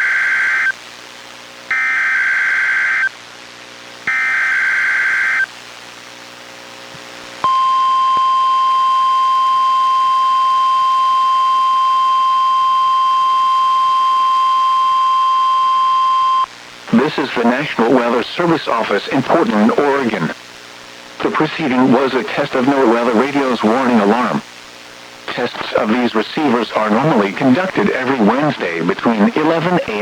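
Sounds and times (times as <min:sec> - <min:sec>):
steady warning alarm tone: 0:01.7 - 0:03.1, 0:04.1 - 0:05.5, 0:07.4 - 0:16.5.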